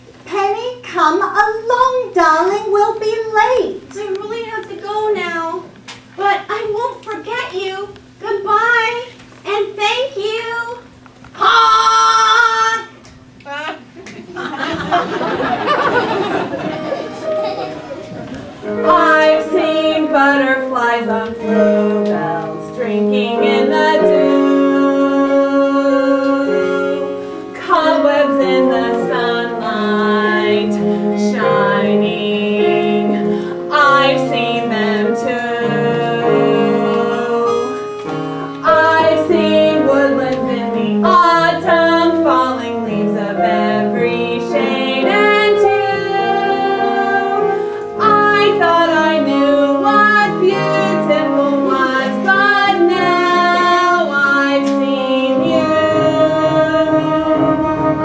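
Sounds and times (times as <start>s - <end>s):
instrumental accompaniment: 15.0s - 58.0s
woman singing show tune: 18.6s - 37.8s, 38.6s - 58.0s.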